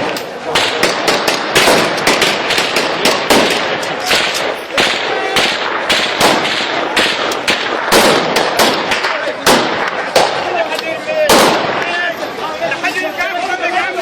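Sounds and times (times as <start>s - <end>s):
rapid sharp bangs: 0.0s - 12.0s.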